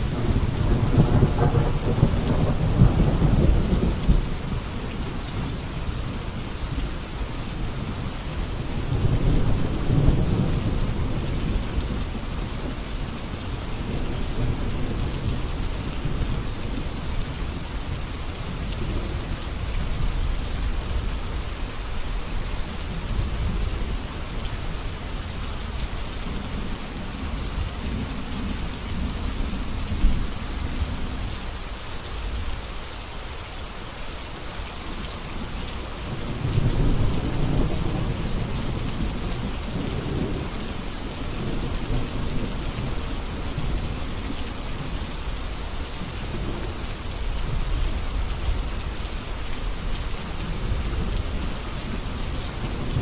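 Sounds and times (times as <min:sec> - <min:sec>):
low thunder rumbling: 0:00.0 - 0:04.6, 0:36.0 - 0:45.2
heavy rain: 0:00.0 - 0:53.0.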